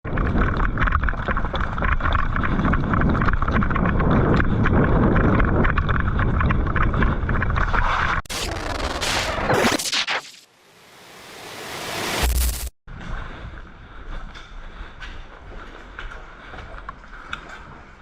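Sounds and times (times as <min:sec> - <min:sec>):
wind buffeting microphone: 0:00.1 - 0:07.8.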